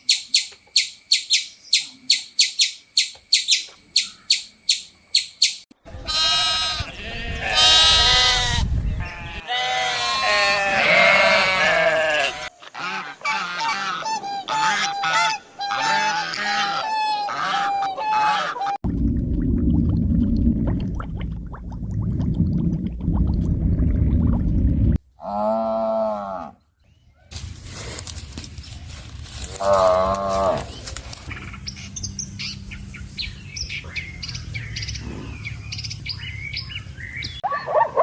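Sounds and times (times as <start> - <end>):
drawn-out pitched animal calls: 6.1 - 18.8.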